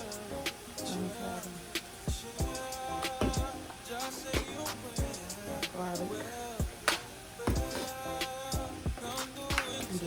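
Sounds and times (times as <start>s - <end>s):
sung melody: 0.0s - 10.0s
kick drum and hi-hat beat: 1.8s - 5.8s, 7.5s - 10.0s.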